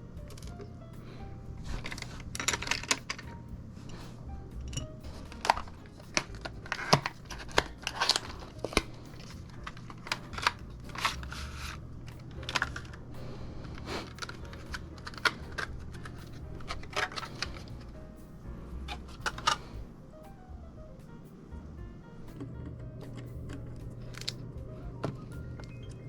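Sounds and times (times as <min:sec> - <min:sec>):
steady low hum: 0:00.0 - 0:26.0
plastic crinkling and rustling: 0:01.6 - 0:17.8.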